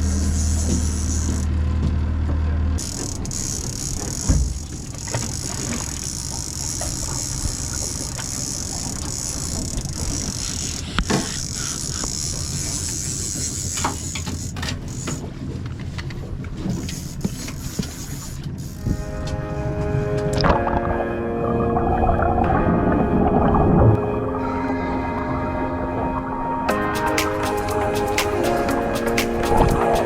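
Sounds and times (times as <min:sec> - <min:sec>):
boat engine running: 0:00.0 - 0:30.0
hiss of wind and water: 0:02.8 - 0:23.9.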